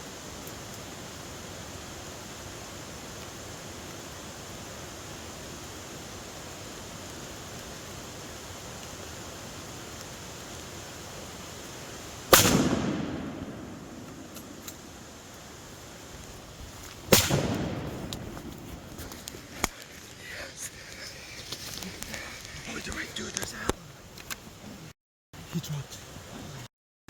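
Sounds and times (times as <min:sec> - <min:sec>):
rifle shots echoing: 0:12.3 - 0:15.2, 0:17.1 - 0:19.7.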